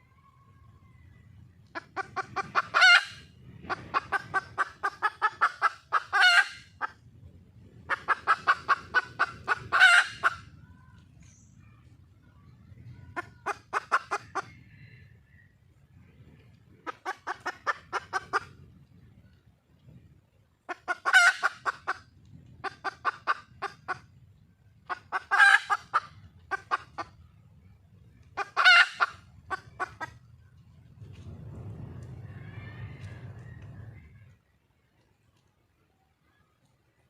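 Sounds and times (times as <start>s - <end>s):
hen rapid clucking: 1.7s - 7.0s, 7.8s - 10.6s, 12.8s - 15.0s, 16.7s - 19.0s, 20.7s - 24.2s, 24.8s - 27.3s, 28.1s - 30.4s.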